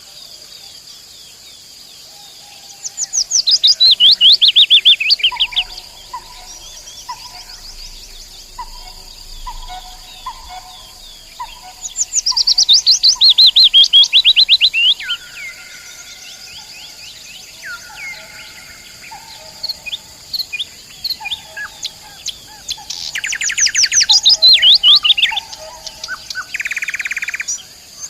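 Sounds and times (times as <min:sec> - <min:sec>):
faint steady high hiss: 0:00.0 - 0:28.0
nightingale singing: 0:02.1 - 0:28.0
soft low bird note: 0:05.1 - 0:14.7.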